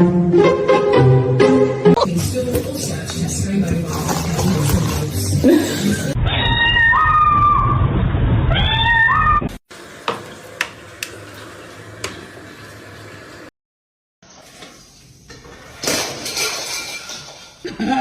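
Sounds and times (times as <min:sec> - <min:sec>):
cat meowing: 0:06.2 - 0:07.7, 0:08.5 - 0:09.6.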